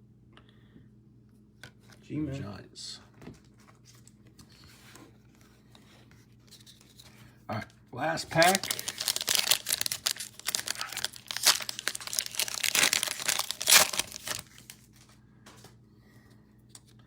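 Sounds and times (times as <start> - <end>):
card pack wrapper tearing: 8.3 - 14.9.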